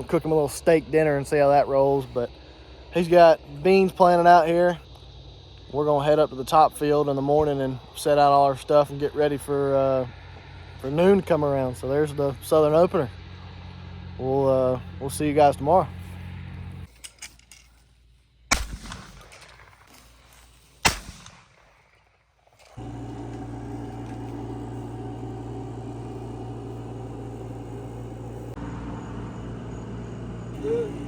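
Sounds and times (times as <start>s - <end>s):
shotgun shots with echo: 18.5s - 19.9s, 20.8s - 22.0s
low hum with held tones: 22.8s - 31.0s.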